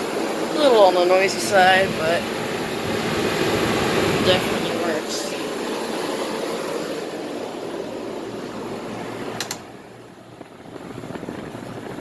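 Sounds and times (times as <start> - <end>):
air conditioner blowing air: 0.0 - 12.0
air conditioner click: 8.4 - 11.8.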